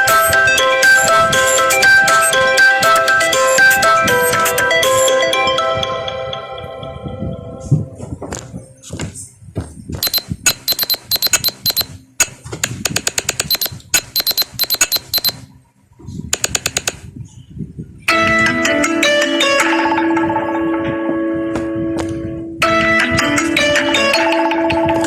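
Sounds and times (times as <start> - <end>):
marimba phone ringtone: 0.0 - 6.0, 10.0 - 11.9, 13.5 - 15.4
bell-like ringtone chimes: 10.0 - 11.9
ringtone of sharp high clicks: 10.0 - 12.0, 13.4 - 15.4.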